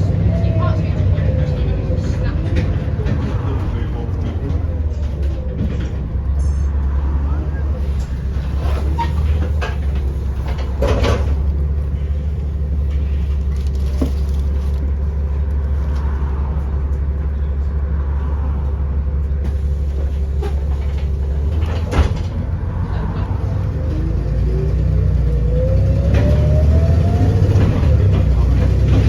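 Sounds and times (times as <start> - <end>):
diesel engine droning: 0.0 - 29.0.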